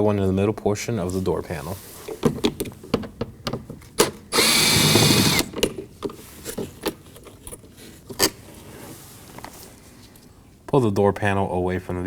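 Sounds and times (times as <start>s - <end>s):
cordless screwdriver running: 4.3s - 5.6s.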